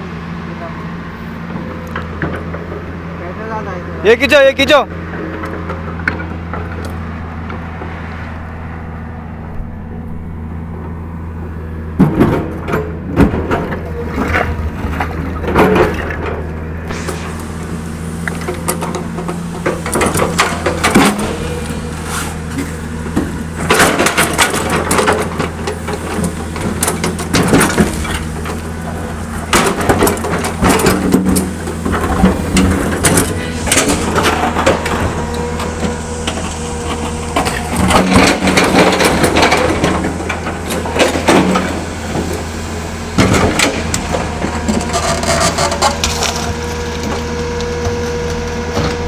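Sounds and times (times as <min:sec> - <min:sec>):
excavator diesel engine running: 0:00.0 - 0:49.0
rock crunching and scraping: 0:12.4 - 0:49.0.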